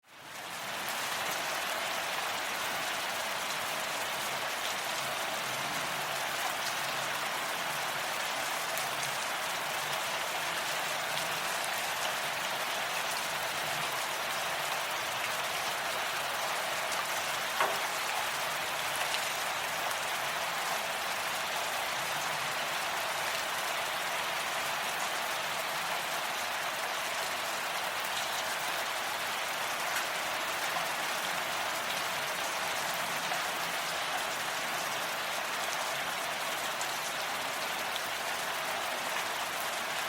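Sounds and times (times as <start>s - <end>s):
steady rain falling: 0.0s - 40.0s.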